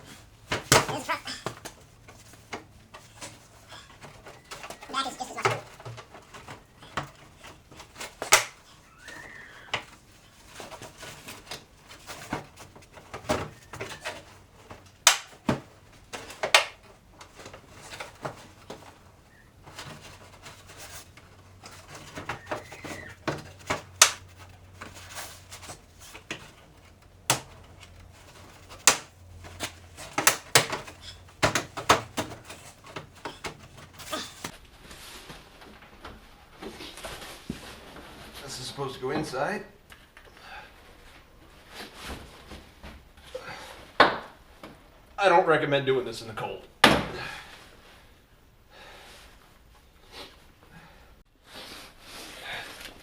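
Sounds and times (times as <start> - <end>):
plastic and metal parts clicking: 0.3 - 34.5.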